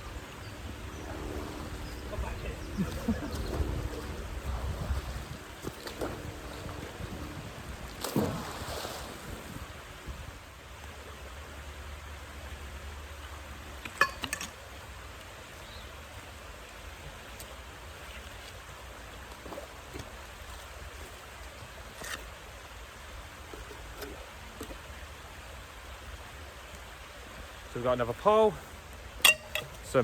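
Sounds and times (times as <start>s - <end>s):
water by the shore: 0.0s - 30.0s
wind: 0.0s - 30.0s.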